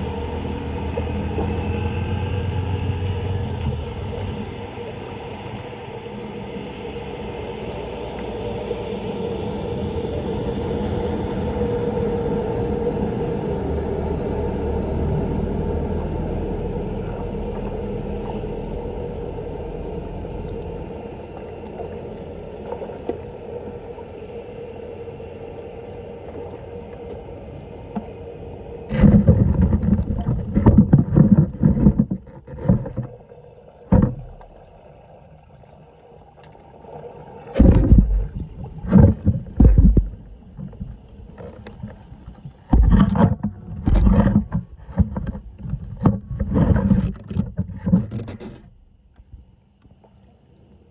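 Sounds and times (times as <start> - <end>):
water rushing: 0.0 - 49.0
splashes in shallow water: 36.5 - 48.9.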